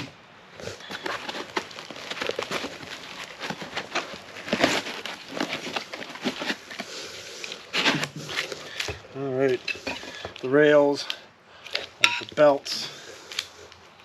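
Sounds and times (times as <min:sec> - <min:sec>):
packaging rustling and crinkling: 0:00.6 - 0:14.0.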